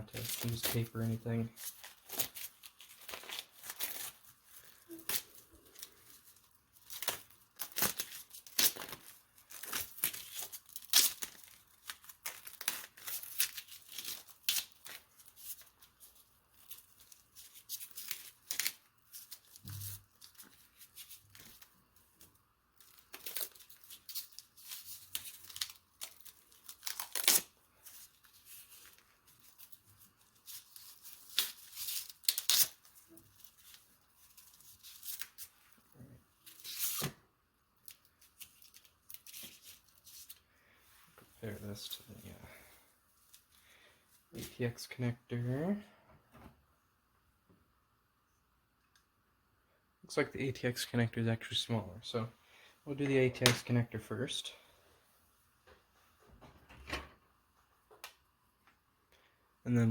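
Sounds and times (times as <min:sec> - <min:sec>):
plastic packaging crinkling and tearing: 0:00.0 - 0:37.2, 0:37.8 - 0:40.4.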